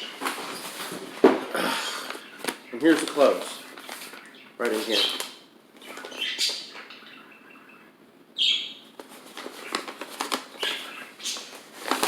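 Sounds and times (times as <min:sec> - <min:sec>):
clothes and packaging rustling: 0:00.0 - 0:06.5, 0:08.9 - 0:12.0.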